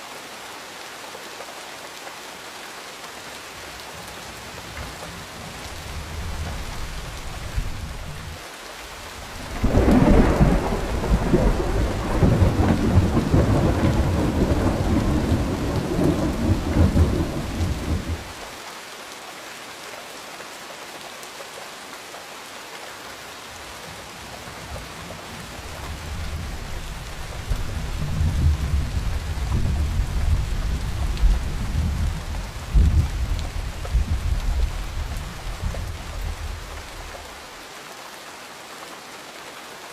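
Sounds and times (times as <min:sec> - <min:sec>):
steady rain: 0:00.0 - 0:39.9
thunder clap and rumble: 0:09.4 - 0:18.4, 0:25.7 - 0:37.2.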